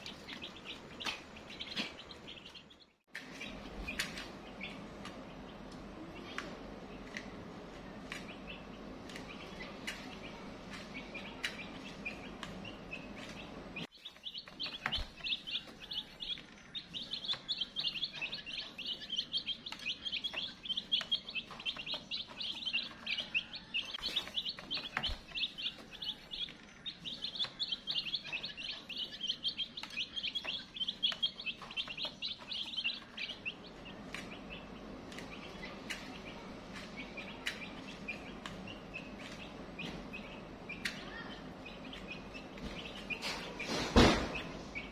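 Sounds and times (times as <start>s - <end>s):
chicks peeping: 0.0s - 44.9s.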